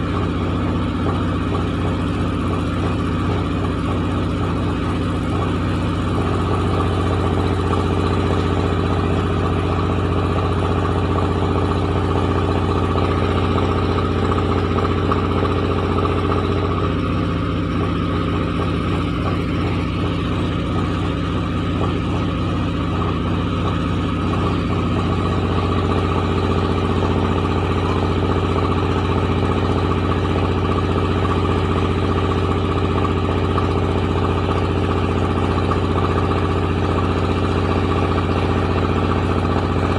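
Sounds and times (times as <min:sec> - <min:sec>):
milling machine running: 0:00.0 - 0:39.9.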